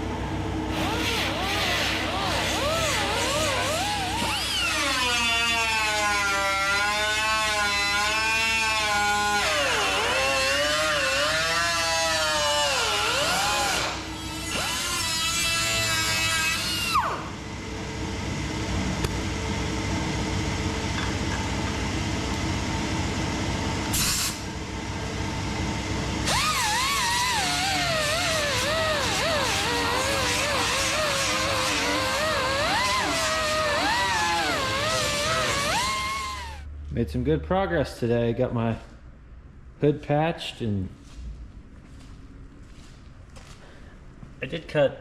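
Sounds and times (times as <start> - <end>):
power tool whining: 0.7 - 17.3, 26.2 - 36.7.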